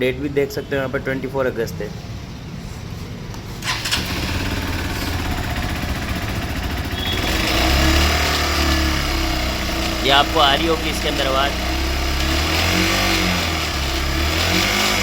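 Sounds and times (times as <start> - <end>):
engine internal noise: 3.3 - 15.0
motorcycle engine running: 3.6 - 15.0.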